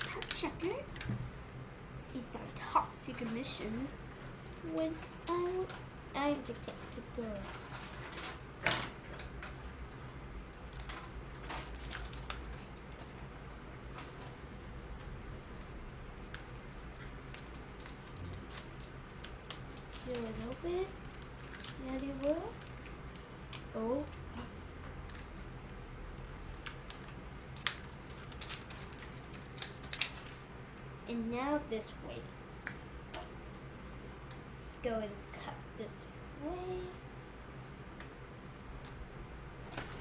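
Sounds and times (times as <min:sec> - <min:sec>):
plastic packaging crinkling: 0:00.0 - 0:01.0, 0:10.7 - 0:13.2, 0:15.0 - 0:30.5
wrapping rustling: 0:10.7 - 0:30.5.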